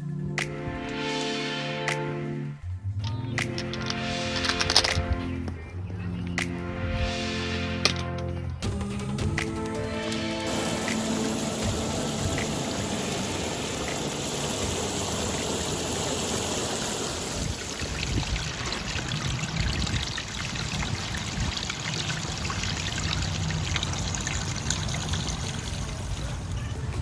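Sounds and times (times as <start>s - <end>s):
water trickling over rocks: 10.5s - 27.0s.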